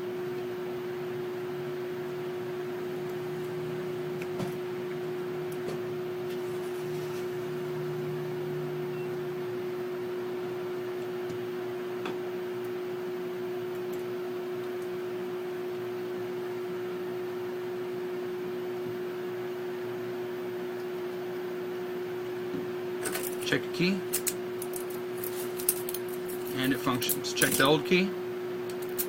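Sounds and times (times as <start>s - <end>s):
steady appliance hum: 0.0s - 29.0s
small metal parts clicking: 24.1s - 27.8s, 28.7s - 29.0s.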